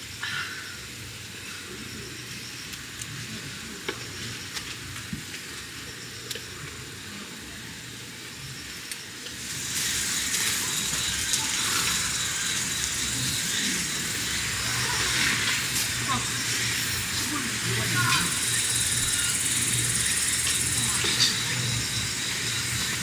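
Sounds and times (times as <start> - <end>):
food sizzling on griddle: 9.2 - 23.0.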